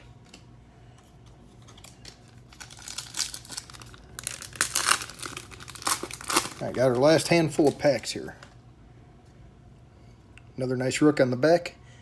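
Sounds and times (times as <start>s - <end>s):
foil wrapper crinkling and tearing: 1.5s - 8.6s.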